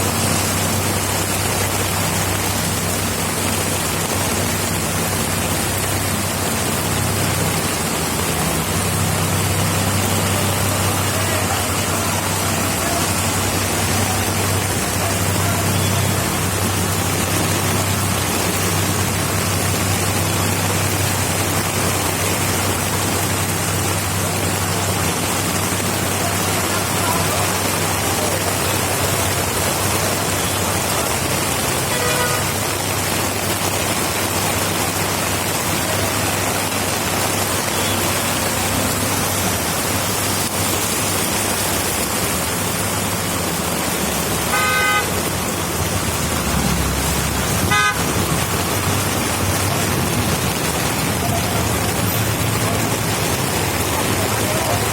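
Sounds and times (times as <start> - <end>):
rain hissing: 0.0 - 54.9
road traffic engine hum: 0.0 - 54.9
car horns tooting: 31.8 - 32.6, 44.4 - 45.3, 47.5 - 48.4.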